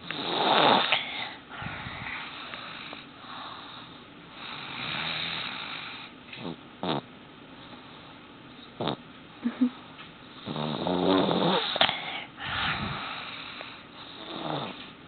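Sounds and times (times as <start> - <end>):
buzzing snore: 0.0 - 1.1, 1.7 - 7.1, 8.8 - 9.0, 10.4 - 14.9
breathy exhale: 11.8 - 13.9.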